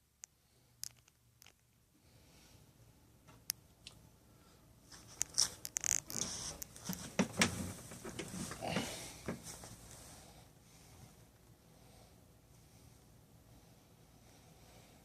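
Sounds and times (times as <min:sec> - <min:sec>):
kitten rustling and scuffling: 0:04.9 - 0:10.1.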